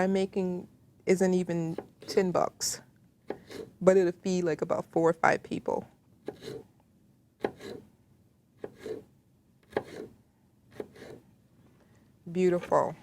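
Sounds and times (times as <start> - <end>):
knife cutting on a cutting board: 3.2 - 3.8, 6.2 - 6.7, 7.4 - 7.9, 8.6 - 11.2.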